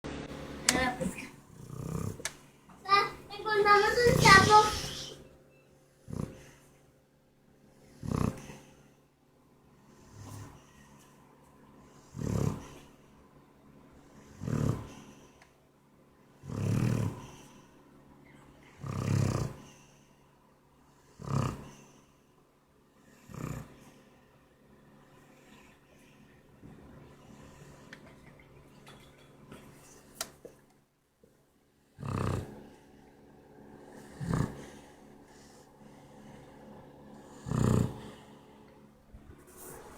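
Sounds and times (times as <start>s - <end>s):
dog breathing: 0.8s - 2.3s, 2.9s - 5.2s, 9.8s - 11.2s, 16.4s - 18.0s, 33.8s - 38.6s
dog snoring: 0.8s - 2.3s, 2.9s - 5.2s, 6.0s - 6.8s, 7.8s - 8.9s, 9.8s - 10.9s, 11.8s - 13.2s, 13.9s - 15.4s, 16.4s - 17.8s, 18.7s - 20.0s, 20.9s - 22.0s, 23.0s - 24.0s, 32.0s - 32.9s, 33.8s - 36.4s, 37.1s - 38.4s.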